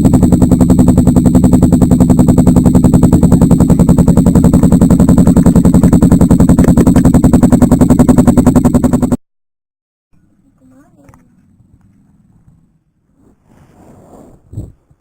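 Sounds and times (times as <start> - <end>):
motorcycle engine idling: 0.0 - 9.2.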